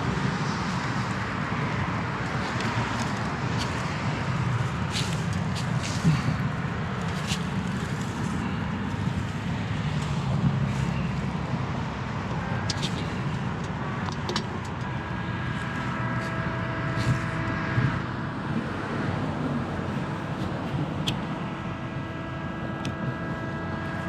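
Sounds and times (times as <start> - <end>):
road traffic rumble: 0.0 - 24.0
faint steady tones: 14.4 - 24.0.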